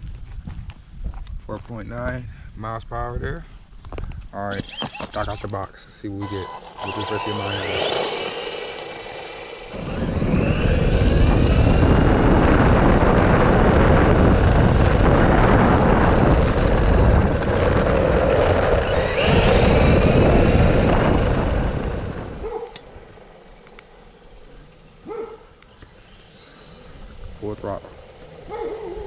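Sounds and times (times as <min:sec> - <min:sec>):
rc car electric motor whine: 0:04.4 - 0:29.0.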